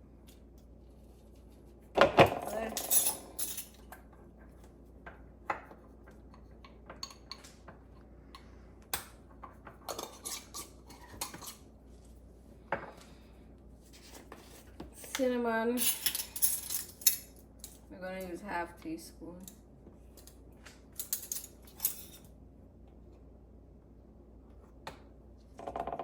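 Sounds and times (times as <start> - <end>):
metal utensils and dishes clinking: 15.8 - 17.8.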